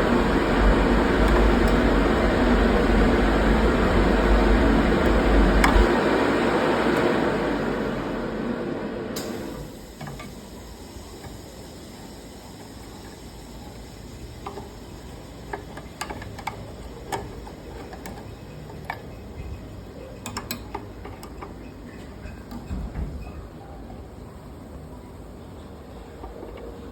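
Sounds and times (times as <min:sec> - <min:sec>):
low machinery hum: 0:00.0 - 0:20.2.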